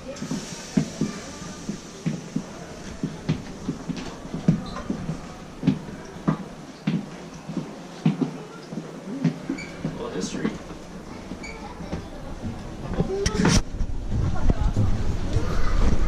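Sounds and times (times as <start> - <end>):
background hiss: 0.0 - 11.9.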